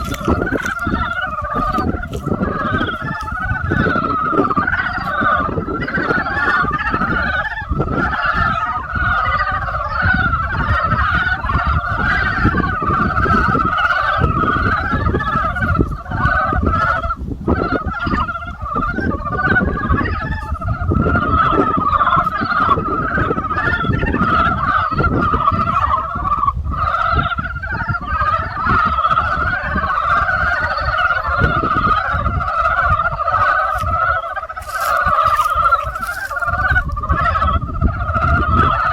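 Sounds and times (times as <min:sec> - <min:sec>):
chorus of frogs croaking: 0:00.0 - 0:38.9.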